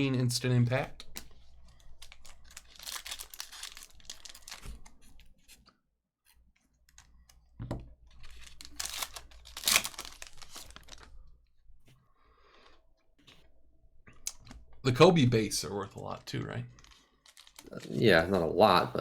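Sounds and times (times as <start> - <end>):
packaging rustling and crinkling: 1.2 - 5.6, 7.9 - 11.4, 16.7 - 18.0.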